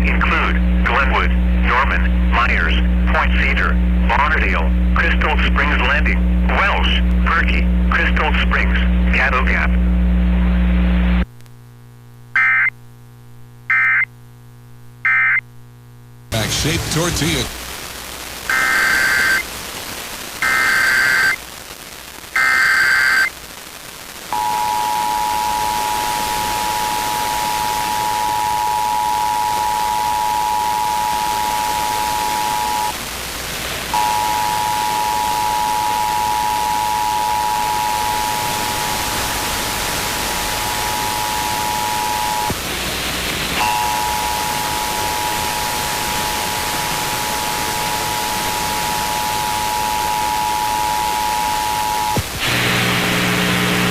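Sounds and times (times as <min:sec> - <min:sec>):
static hiss: 0:14.2 - 0:53.9
digital data tone bursts: 0:24.4 - 0:33.0, 0:34.0 - 0:39.1, 0:40.1 - 0:42.6, 0:43.6 - 0:52.2
two-tone attention signal: 0:34.0 - 0:38.6, 0:43.6 - 0:46.4, 0:48.6 - 0:52.2.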